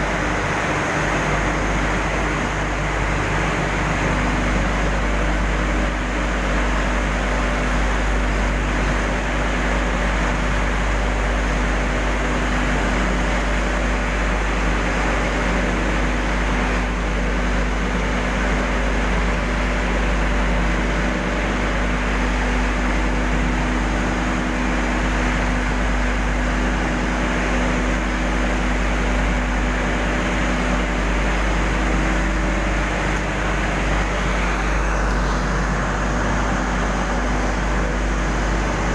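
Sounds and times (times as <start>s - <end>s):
furnace machinery drone: 0.0s - 38.9s.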